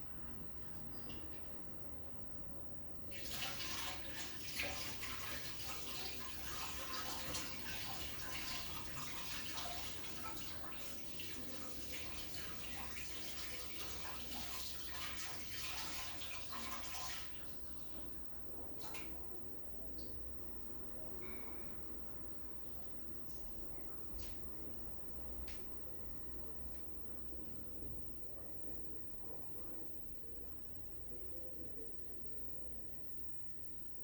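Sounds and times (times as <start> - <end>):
water running from a tap: 3.1 - 18.0.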